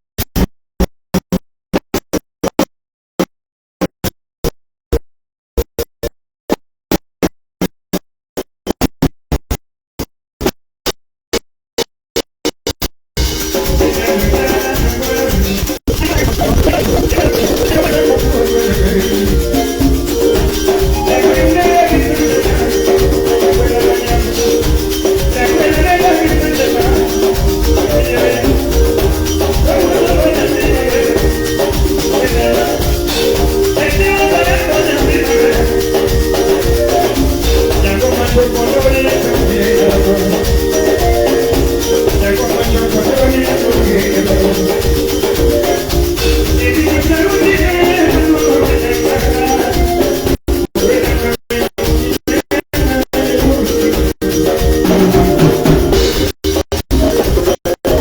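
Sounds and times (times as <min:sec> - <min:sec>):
live band playing dance music: 0:13.2 - 0:58.0
shaker: 0:13.2 - 0:58.0
steady bass beat: 0:13.2 - 0:58.0.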